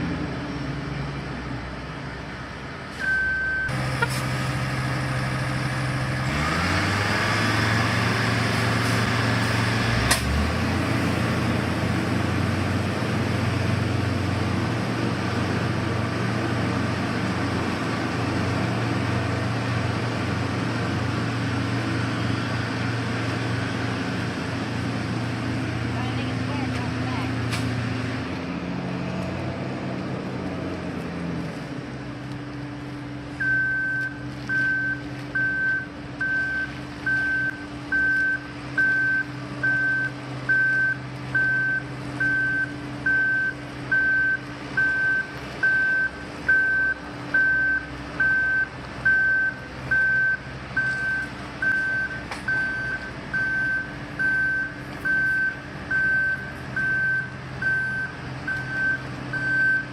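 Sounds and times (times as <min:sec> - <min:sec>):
heavy vehicle engine running: 0:00.0 - 0:59.9
reversing alarm beeping: 0:03.0 - 0:03.8, 0:33.4 - 0:59.9.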